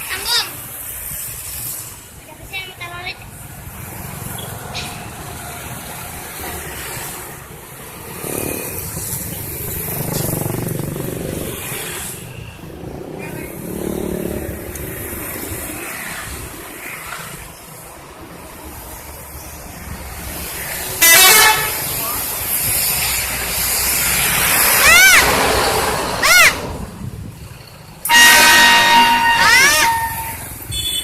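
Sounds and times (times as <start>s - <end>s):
vehicles passing: 0.0s - 31.0s.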